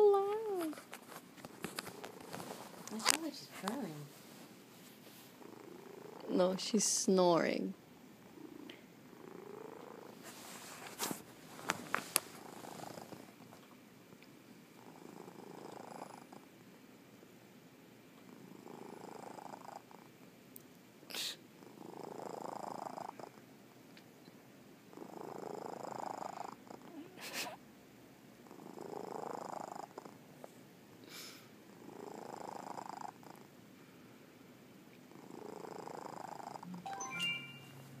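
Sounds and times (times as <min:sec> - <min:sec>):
cat snoring: 0:05.4 - 0:06.3, 0:08.3 - 0:10.2, 0:12.4 - 0:13.3, 0:14.8 - 0:16.4, 0:18.3 - 0:20.1, 0:21.6 - 0:23.4, 0:24.9 - 0:27.0, 0:28.4 - 0:30.2, 0:31.7 - 0:33.5, 0:35.1 - 0:36.7.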